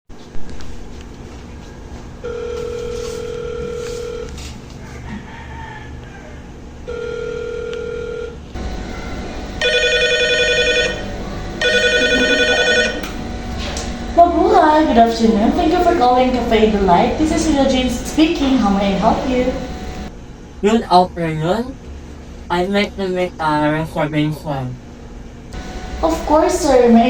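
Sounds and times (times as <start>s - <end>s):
long steady telephone tones: 2.2s - 4.3s, 6.9s - 20.1s, 25.6s - 27.0s
trilling electronic phone rings: 2.2s - 4.3s, 6.9s - 13.4s.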